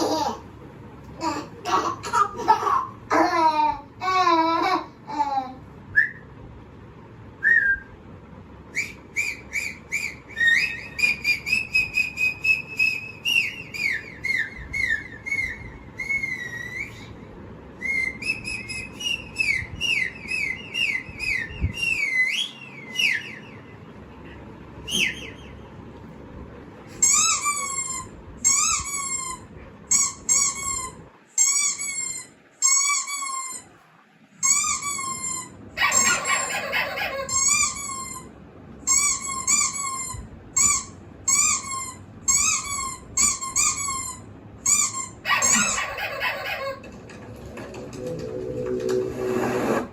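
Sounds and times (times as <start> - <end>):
rising and falling whistle calls: 5.9 - 6.3, 7.4 - 8.0, 8.7 - 17.2, 17.8 - 23.8, 24.8 - 25.7
high whistled chirps: 7.4 - 8.0, 8.7 - 23.9, 24.8 - 25.8.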